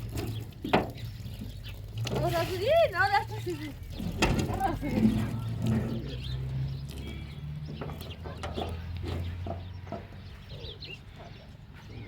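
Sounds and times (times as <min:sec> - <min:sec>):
chickens clucking: 0:03.4 - 0:12.0.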